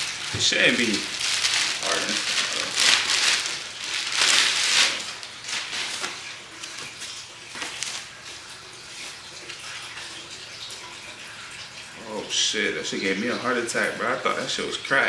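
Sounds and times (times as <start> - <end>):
packaging rustling and crinkling: 0.0 - 9.2.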